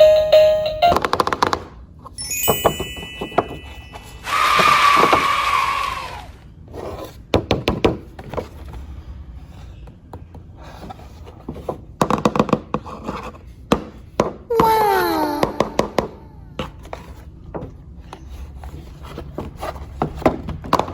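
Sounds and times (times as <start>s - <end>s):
toy sound effect from speaker: 14.5s - 16.3s.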